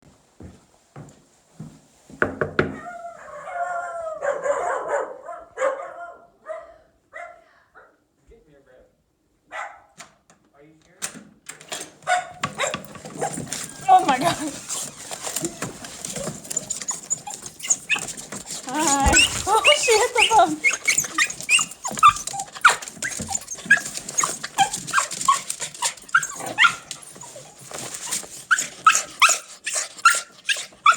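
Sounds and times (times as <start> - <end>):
dog howling and whining: 2.8 - 4.7, 13.2 - 30.9
dog barking: 2.8 - 8.0, 9.5 - 10.0, 12.1 - 13.4.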